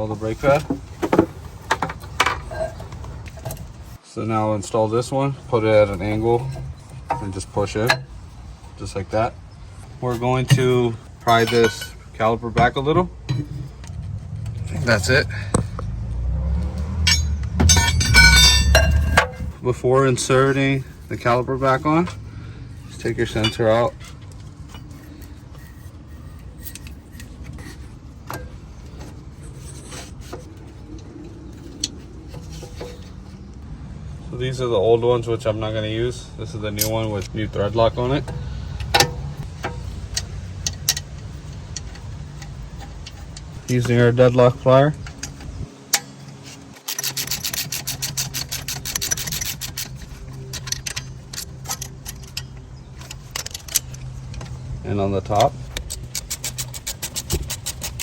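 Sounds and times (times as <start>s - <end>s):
steady low hum: 0.0s - 58.0s
rubbing of small parts: 46.1s - 54.6s, 55.4s - 58.0s
hand ratchet clicking: 46.9s - 52.5s, 55.8s - 58.0s.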